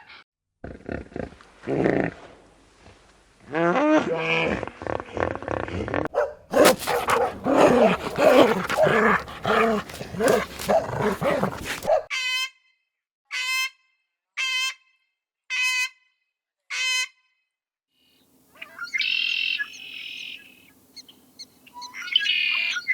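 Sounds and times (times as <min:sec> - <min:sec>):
animal calls: 0:06.6 - 0:12.0.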